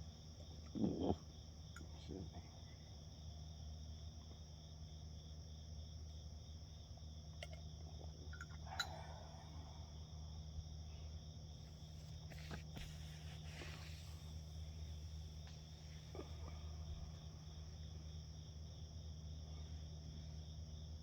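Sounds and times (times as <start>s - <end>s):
constant low hum: 0.0s - 21.0s
crickets chirping: 0.0s - 21.0s
faint rustles: 11.6s - 17.5s.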